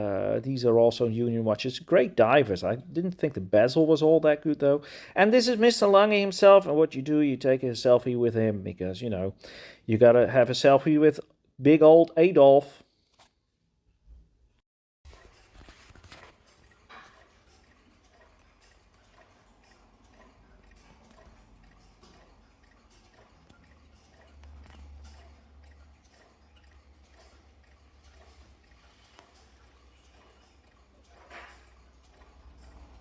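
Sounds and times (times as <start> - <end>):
small clicks and taps: 15.1 - 33.0.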